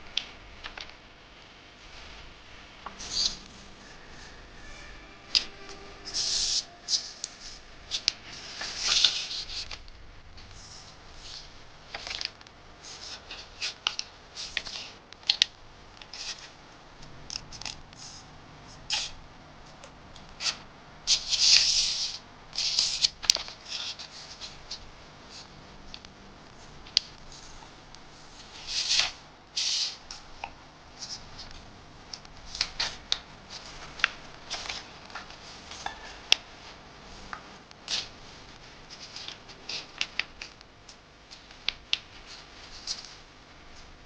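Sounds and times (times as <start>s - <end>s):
paper clicks: 0.1s - 1.0s, 5.4s - 16.6s, 19.8s - 26.1s, 28.6s - 36.5s, 38.9s - 43.2s
paper rustling and crackling: 5.4s - 19.2s, 20.1s - 44.0s.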